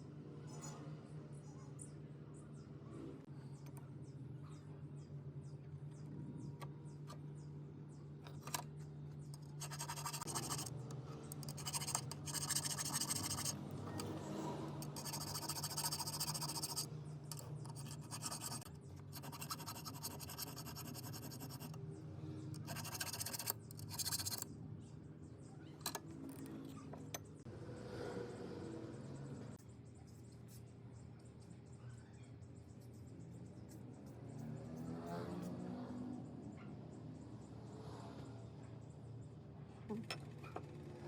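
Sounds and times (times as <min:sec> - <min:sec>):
scratchy rubbing: 0:09.3 - 0:10.7, 0:11.3 - 0:14.2, 0:14.8 - 0:21.8, 0:22.6 - 0:24.4.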